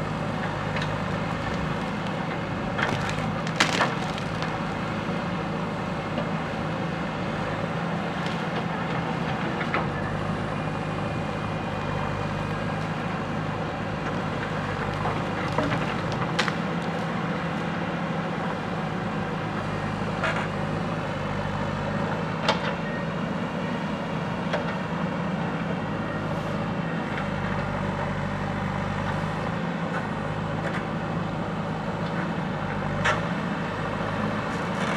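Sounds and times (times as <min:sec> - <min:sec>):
diesel engine running: 0:00.0 - 0:34.9
wood snapping: 0:02.8 - 0:04.6, 0:15.6 - 0:16.6.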